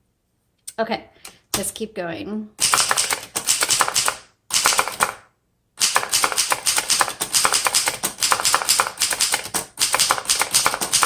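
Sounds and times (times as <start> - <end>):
fast typewriter typing: 2.6 - 5.2, 5.8 - 11.0.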